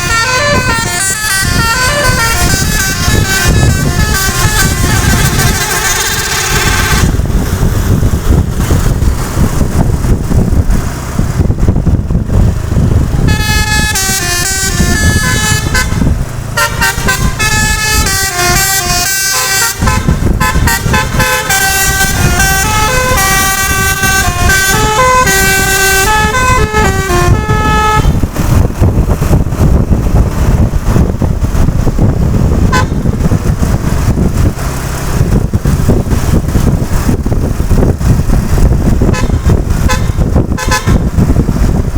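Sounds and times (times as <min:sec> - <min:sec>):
bus horn playing a tune: 0:00.0 - 0:07.4, 0:13.2 - 0:28.7, 0:32.5 - 0:33.2, 0:38.8 - 0:41.3
vehicle noise: 0:00.0 - 0:41.9.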